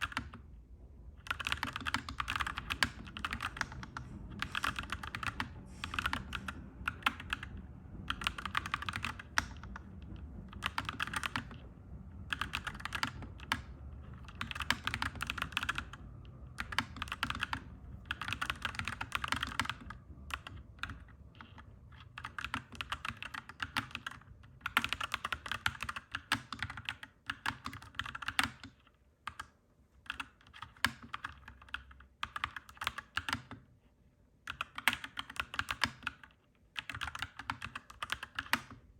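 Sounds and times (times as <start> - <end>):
mechanical keyboard typing: 0.0 - 0.4, 1.2 - 33.6, 34.5 - 38.8
low background rumble: 0.0 - 25.0.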